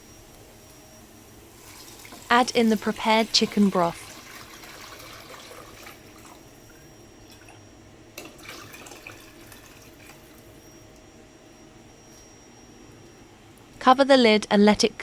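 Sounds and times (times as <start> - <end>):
broth trickling into a pot: 0.4 - 10.7.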